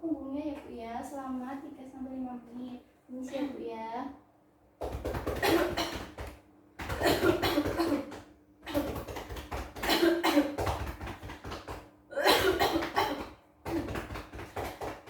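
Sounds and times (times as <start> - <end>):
cupped hands clapping on back: 4.8 - 15.0.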